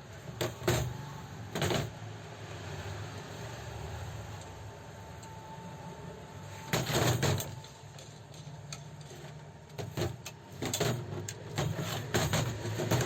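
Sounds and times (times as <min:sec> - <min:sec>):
metal parts clicking and knocking: 0:06.7 - 0:13.0.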